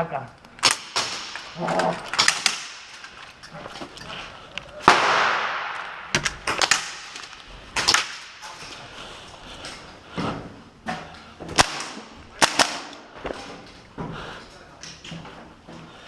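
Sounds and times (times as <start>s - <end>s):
airsoft gun shots: 4.9s - 7.1s.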